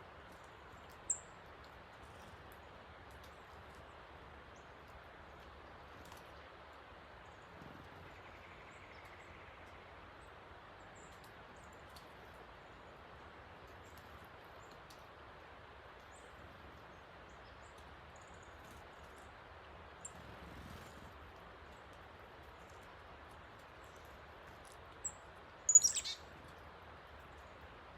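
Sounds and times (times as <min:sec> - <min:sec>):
small birds chirping: 0:00.2 - 0:05.0, 0:16.0 - 0:27.7.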